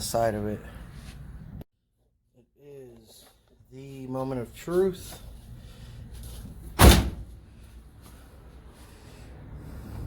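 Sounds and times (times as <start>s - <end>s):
truck door latch clunk: 6.8s - 7.3s.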